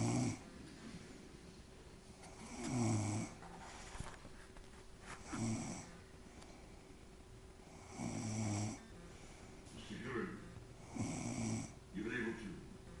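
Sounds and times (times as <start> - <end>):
woman snoring: 0.0 - 0.4, 2.4 - 3.4, 5.3 - 6.0, 7.7 - 8.9, 10.8 - 11.8
quiet breathing: 0.0 - 11.9.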